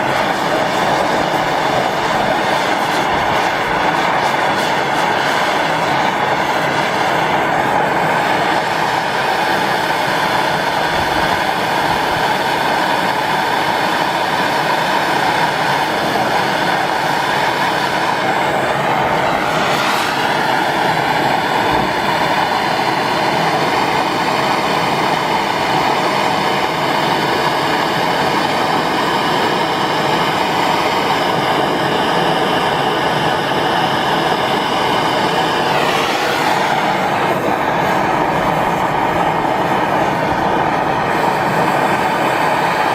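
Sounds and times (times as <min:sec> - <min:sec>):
gas torch flame hissing: 0:00.0 - 0:42.9.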